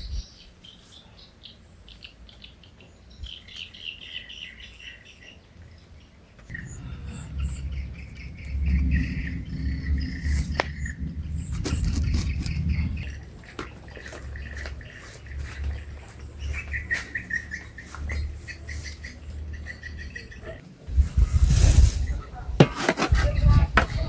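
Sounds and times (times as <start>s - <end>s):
small birds chirping: 0.0s - 21.0s
low rumble: 6.5s - 22.4s
sharp clicks and rustles: 7.6s - 16.3s.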